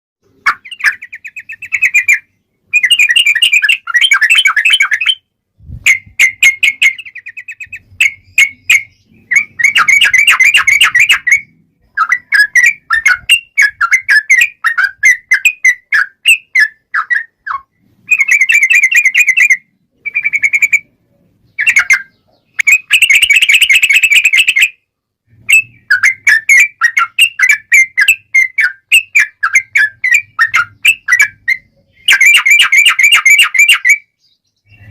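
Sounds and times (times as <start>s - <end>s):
bulbul chattering song: 0.2s - 34.9s.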